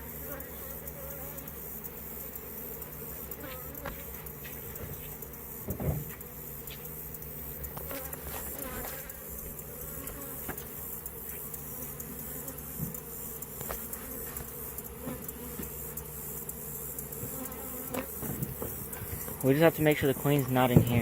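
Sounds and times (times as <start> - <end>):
bees buzzing: 0.0 - 21.0.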